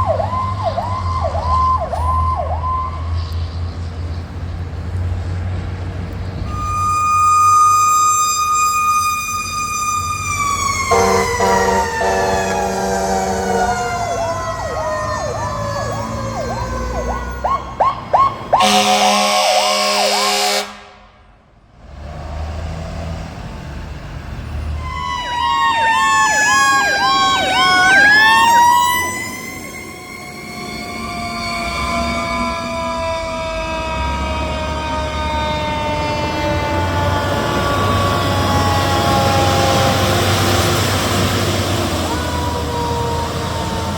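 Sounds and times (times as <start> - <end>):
siren wailing: 0.0 - 3.3, 6.4 - 20.8, 24.7 - 43.9
air horn blasts: 6.5 - 8.1, 10.9 - 14.2, 18.6 - 21.2, 24.8 - 26.5
electronic siren yelp: 6.5 - 20.7, 24.8 - 40.9.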